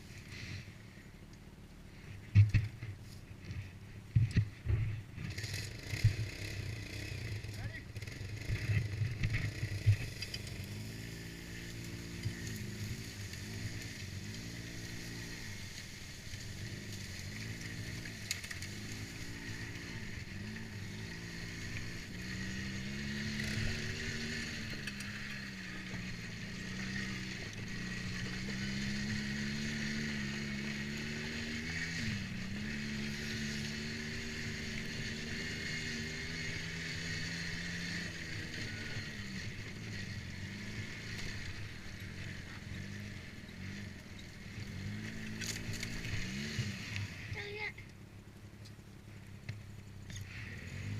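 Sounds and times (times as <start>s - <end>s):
atv engine revving: 0.0s - 50.9s.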